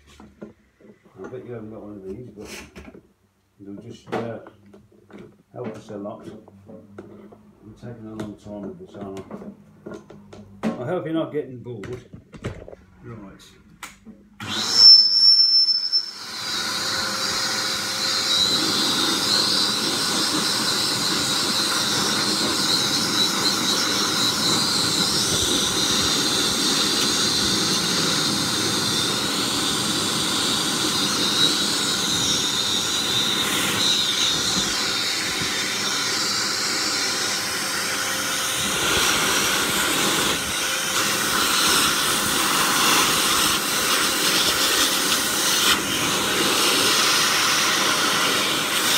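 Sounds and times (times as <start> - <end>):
dog dryer blowing air: 14.4 - 48.9.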